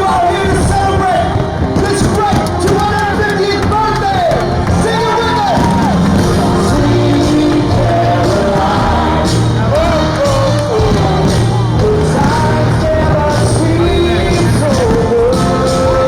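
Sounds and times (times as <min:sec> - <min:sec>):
loud rock music: 0:00.0 - 0:16.0
repeating bass line: 0:00.0 - 0:16.0
person singing: 0:02.0 - 0:16.0.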